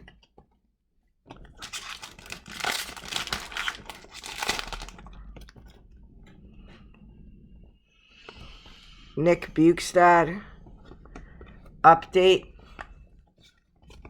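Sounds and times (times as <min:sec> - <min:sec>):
wrapper tearing and crinkling: 0:01.6 - 0:05.0.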